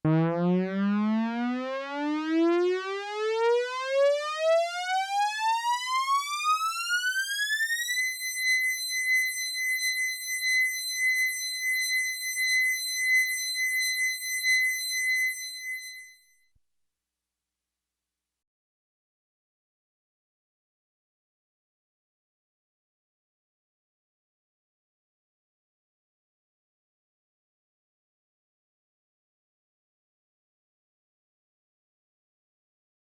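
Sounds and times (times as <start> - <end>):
alarm siren winding up: 0.1 - 16.1.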